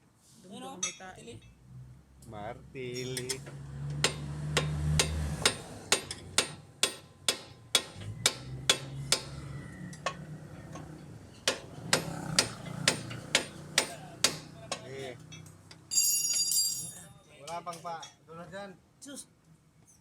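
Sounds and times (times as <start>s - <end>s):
hammer striking metal: 3.0s - 14.9s.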